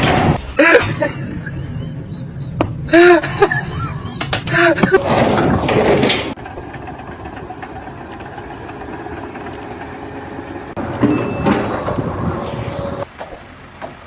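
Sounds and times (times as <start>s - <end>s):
engine running: 10.8s - 13.1s.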